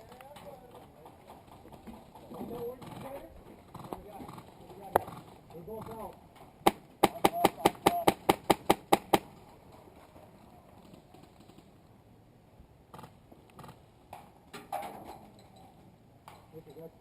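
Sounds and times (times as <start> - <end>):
airsoft rifle shots: 6.6 - 9.3.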